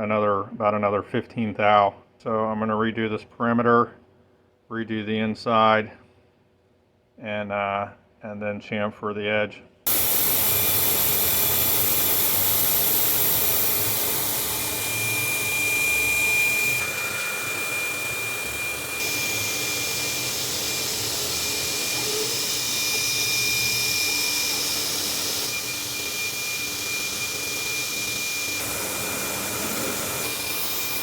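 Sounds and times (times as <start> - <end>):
high whine: 9.9 - 31.0
milling machine whirring: 9.9 - 31.0.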